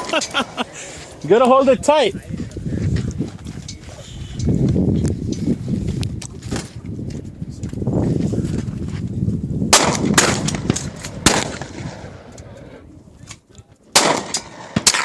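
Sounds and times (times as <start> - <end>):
rifle shots cracking: 9.7 - 12.3, 13.9 - 15.0.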